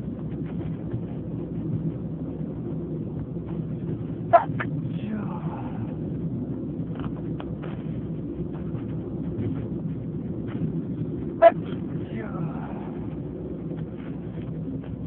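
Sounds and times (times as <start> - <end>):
train carriage rumble: 0.0 - 15.0.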